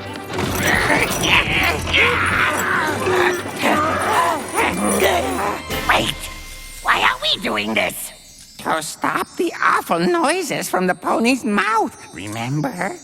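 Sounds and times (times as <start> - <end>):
creaking: 0.0 - 6.1
background music: 0.0 - 12.2
cartoon dogs grunting and groaning: 0.4 - 7.9.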